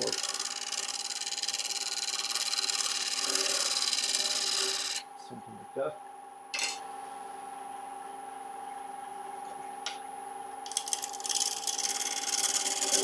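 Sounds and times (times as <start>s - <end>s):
gouge scraping wood: 0.0s - 5.0s, 10.7s - 13.0s
lathe motor hum: 0.0s - 5.0s, 10.7s - 13.0s.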